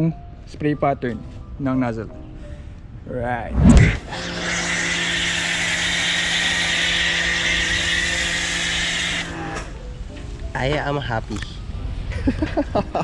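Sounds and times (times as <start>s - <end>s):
pressure washer spray hissing: 3.8s - 9.8s
pump motor humming: 3.8s - 10.0s.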